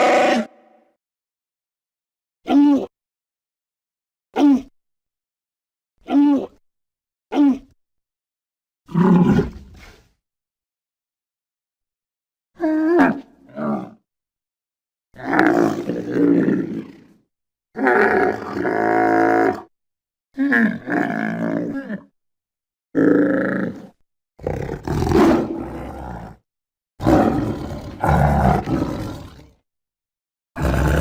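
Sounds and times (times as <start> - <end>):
elephant seal bellowing: 0.0 - 0.8, 30.6 - 31.0.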